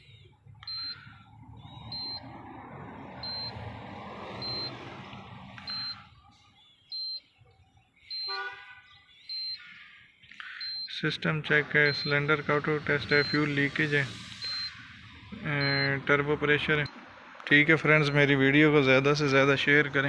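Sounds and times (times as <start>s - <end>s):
vehicle rumbling: 0.0s - 20.0s
horn-like tone: 8.1s - 8.9s
short high electronic beep: 11.6s - 16.2s.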